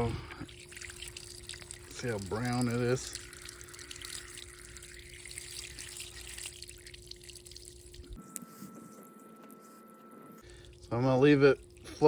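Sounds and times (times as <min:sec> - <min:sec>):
water gushing from a hose: 0:00.0 - 0:08.2
faint steady hum: 0:00.0 - 0:12.0.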